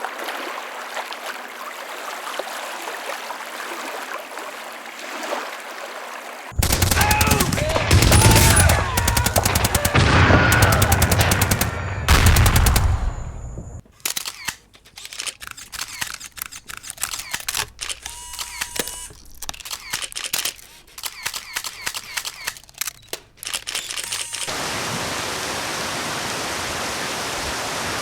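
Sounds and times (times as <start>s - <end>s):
machine-gun fire: 6.6s - 13.8s
camera shutter clicks: 14.0s - 24.6s.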